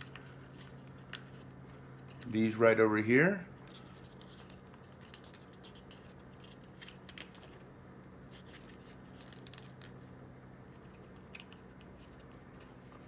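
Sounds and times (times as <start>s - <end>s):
hands handling wires and plastic: 0.0s - 2.3s, 3.6s - 7.6s, 8.3s - 10.0s
low electrical hum: 0.0s - 13.0s.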